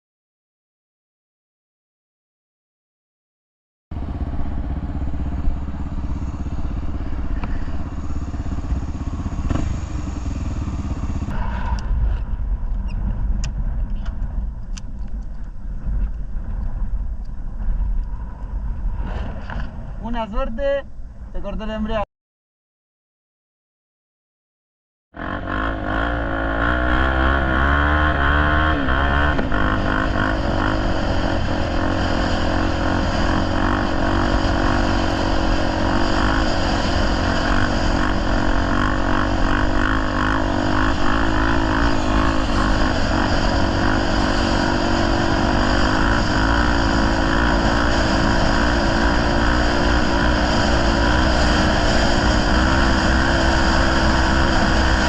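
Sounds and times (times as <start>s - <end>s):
dirt bike engine revving: 3.9s - 12.2s, 25.2s - 55.0s.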